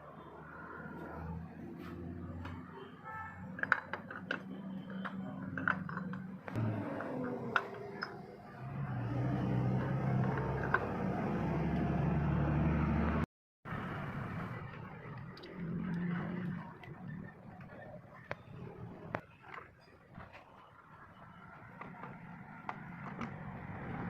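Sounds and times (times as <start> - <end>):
engine running: 5.6 - 16.8.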